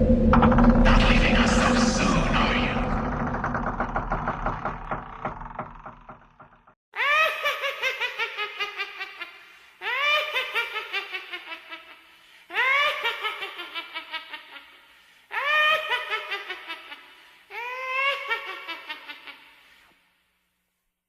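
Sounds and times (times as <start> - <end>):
laugh sound effect: 7.0 - 14.7.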